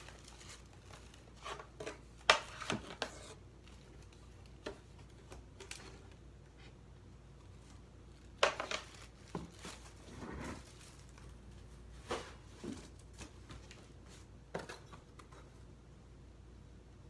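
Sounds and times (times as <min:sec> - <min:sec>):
packing material rustle: 0:00.0 - 0:06.2, 0:07.4 - 0:14.3.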